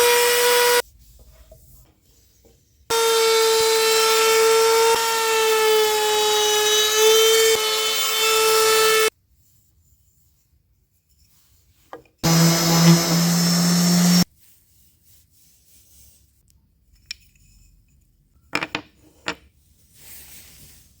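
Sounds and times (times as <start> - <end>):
power tool motor working wood: 2.9 - 9.1, 12.2 - 14.3.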